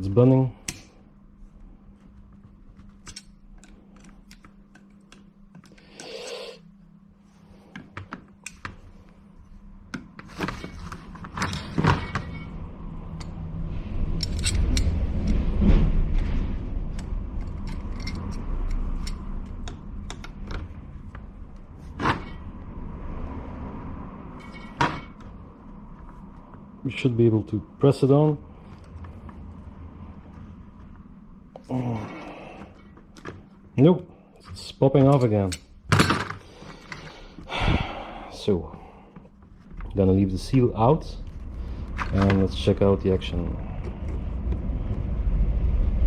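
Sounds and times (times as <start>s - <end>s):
clicks and metallic knocks of parts: 0.6s - 1.0s, 2.4s - 6.4s, 7.7s - 8.9s, 9.9s - 13.4s, 14.1s - 15.4s, 16.9s - 22.5s, 24.4s - 25.3s, 32.6s - 33.6s, 34.4s - 37.1s
low rumble: 11.5s - 33.0s, 39.7s - 46.0s.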